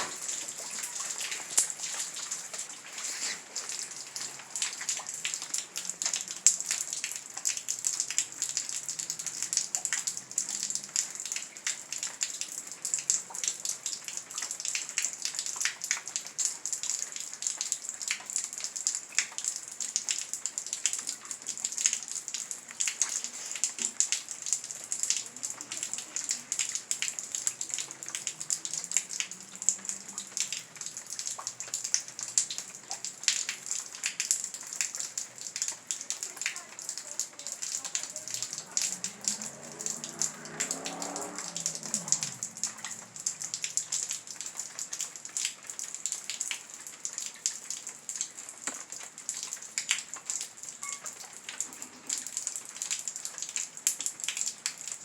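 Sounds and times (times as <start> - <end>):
heavy rain falling: 0.0 - 55.0.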